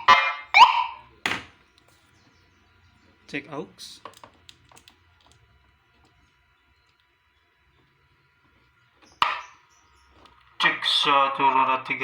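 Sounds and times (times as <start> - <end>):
faint electronic whine: 0.0 - 12.0
small clicks and handling noise: 4.0 - 7.1.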